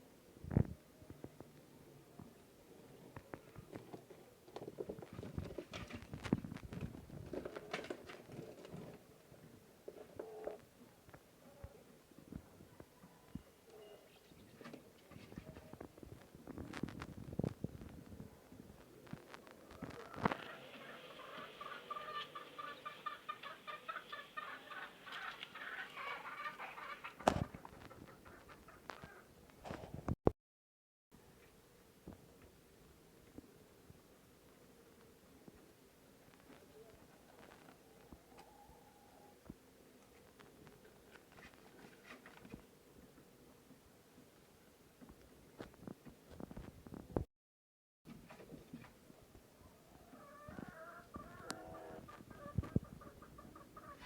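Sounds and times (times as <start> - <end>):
quails pecking and scratching: 0.5 - 30.0, 34.9 - 44.3, 48.1 - 54.0
chicken clucking: 19.6 - 29.3, 49.6 - 54.0.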